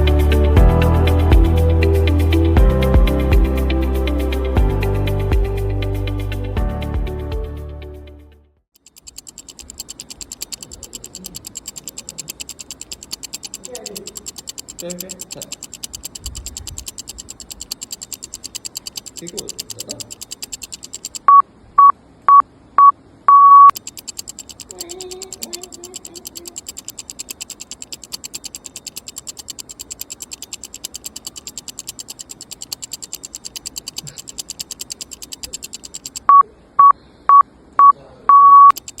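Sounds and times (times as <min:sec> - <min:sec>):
rapid mechanical clicking: 0:08.8 - 0:21.4, 0:23.7 - 0:36.3, 0:38.7 - 0:39.0
electronic beeps: 0:09.1 - 0:24.7, 0:26.4 - 0:39.0.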